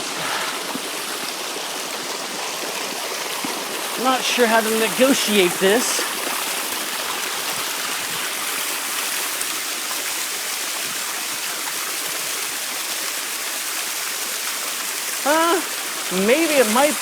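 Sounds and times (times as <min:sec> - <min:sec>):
waterfall rushing: 0:00.0 - 0:07.8, 0:14.2 - 0:17.0.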